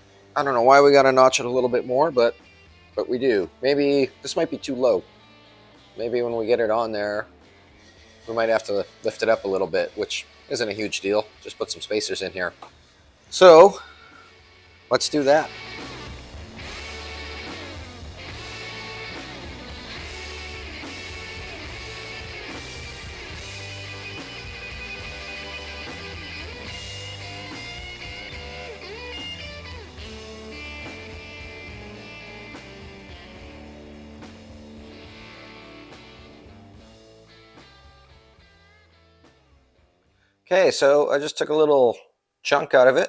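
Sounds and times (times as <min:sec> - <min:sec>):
instrumental rock music: 0:00.0 - 0:40.3.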